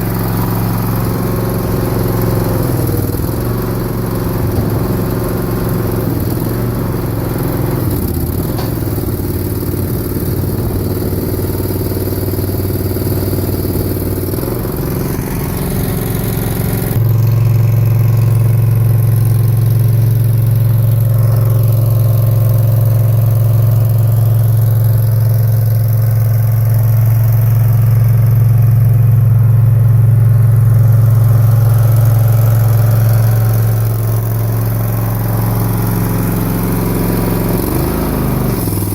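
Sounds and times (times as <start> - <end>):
small engine running: 0.0 - 38.9.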